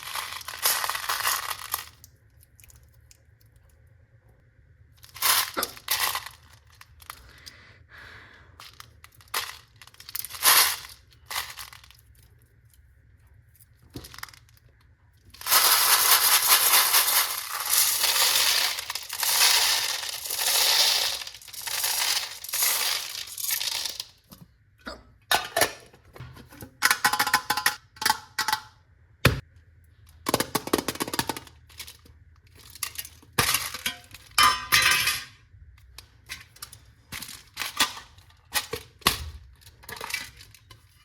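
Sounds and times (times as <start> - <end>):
candies clattering into plastic container: 0.0 - 2.8, 5.0 - 7.4, 8.6 - 12.2, 15.3 - 24.4, 30.2 - 35.4.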